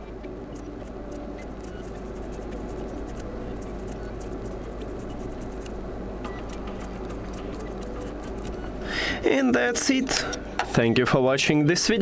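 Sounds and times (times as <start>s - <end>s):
steady low hum: 0.0s - 12.0s
brush scratching earbud grill: 0.5s - 8.8s.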